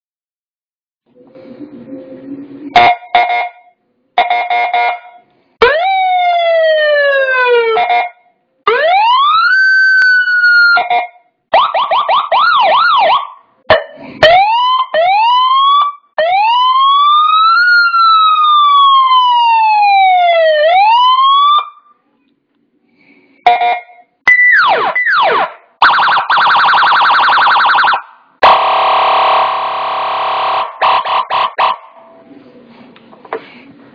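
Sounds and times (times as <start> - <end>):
electronic siren tones: 23.5 - 32.0.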